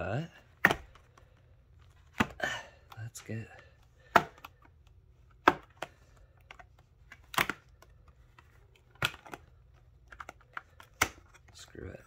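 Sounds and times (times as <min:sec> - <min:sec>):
cardboard packaging clicks and knocks: 0:00.6 - 0:01.2.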